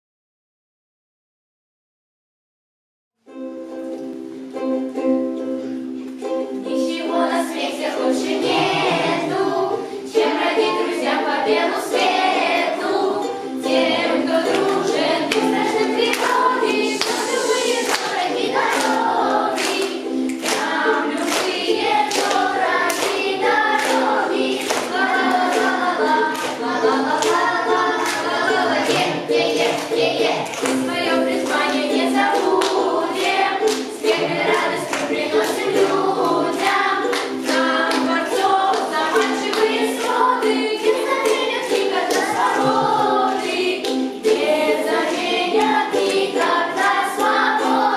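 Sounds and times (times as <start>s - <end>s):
ukulele: 3.2s - 47.9s
group of voices singing: 6.6s - 47.9s
hand claps: 14.4s - 47.4s.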